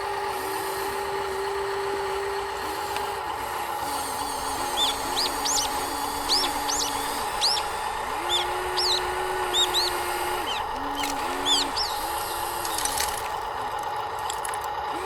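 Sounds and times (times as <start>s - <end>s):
electric motor whine: 0.0s - 15.0s
high bird chirps: 4.3s - 12.9s.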